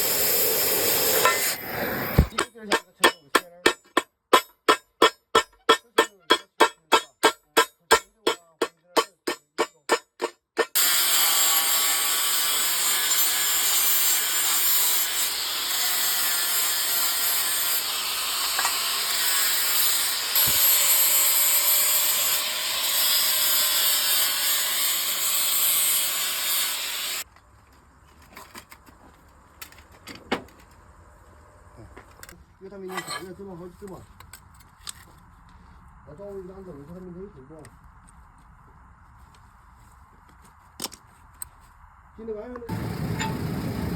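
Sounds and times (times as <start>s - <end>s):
power tool hissing and whining: 0.0s - 2.3s, 10.8s - 27.2s
hammer striking steel: 2.2s - 10.9s, 43.1s - 43.5s.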